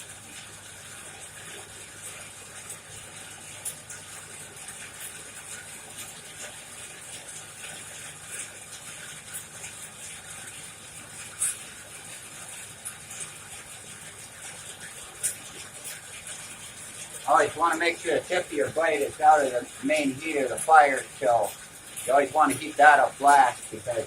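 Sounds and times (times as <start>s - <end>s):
forge fire hissing: 16.8s - 24.0s.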